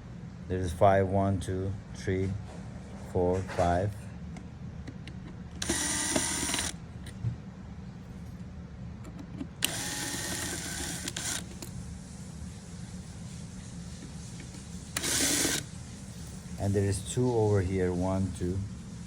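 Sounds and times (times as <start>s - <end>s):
power screwdriver motor whine: 5.6s - 6.8s, 9.6s - 11.7s, 15.0s - 15.7s.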